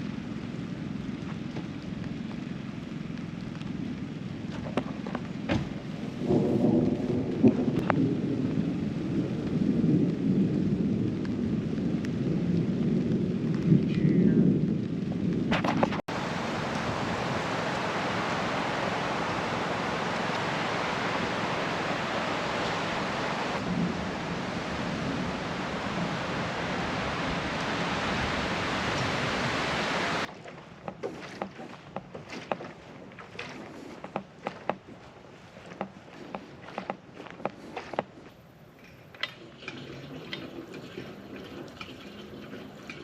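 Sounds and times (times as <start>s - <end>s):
rushing water: 15.6s - 43.0s.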